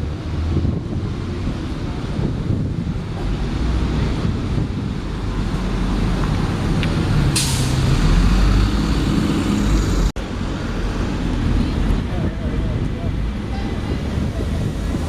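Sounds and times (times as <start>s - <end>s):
bus engine rumbling: 0.0s - 15.0s
air brakes hissing: 7.3s - 7.8s.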